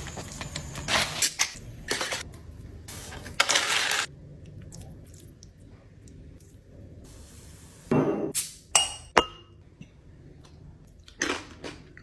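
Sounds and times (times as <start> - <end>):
glass clinking: 7.9 - 9.6.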